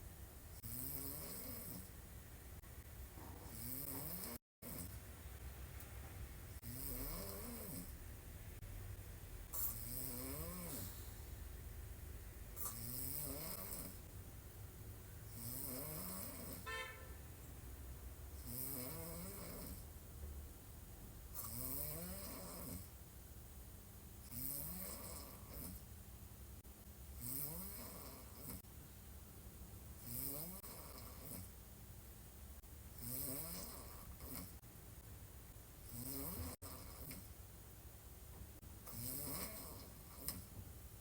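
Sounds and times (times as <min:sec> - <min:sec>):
woman snoring: 0:00.6 - 0:01.9, 0:03.2 - 0:05.0, 0:06.6 - 0:08.0, 0:09.6 - 0:11.1, 0:12.6 - 0:14.1, 0:15.3 - 0:16.7, 0:18.4 - 0:19.8, 0:21.4 - 0:22.9, 0:24.3 - 0:25.8, 0:27.2 - 0:28.6, 0:30.0 - 0:31.5, 0:33.0 - 0:34.6, 0:35.9 - 0:37.2, 0:38.9 - 0:40.4.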